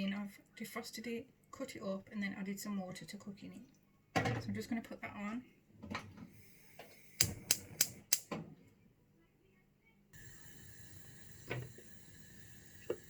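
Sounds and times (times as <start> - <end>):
gas hissing: 6.3 - 8.3, 10.2 - 13.0
hob igniter clicks: 7.2 - 8.3.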